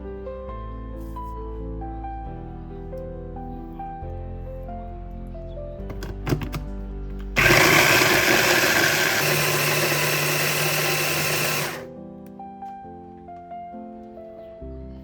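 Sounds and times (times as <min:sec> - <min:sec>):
soft background music: 0:00.0 - 0:07.4, 0:11.9 - 0:15.0
kitchen appliance motor running: 0:07.4 - 0:11.9.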